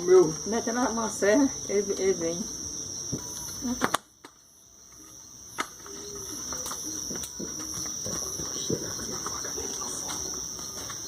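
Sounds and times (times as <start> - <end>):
crickets trilling: 0.0 - 11.0
faint voices: 5.0 - 11.0.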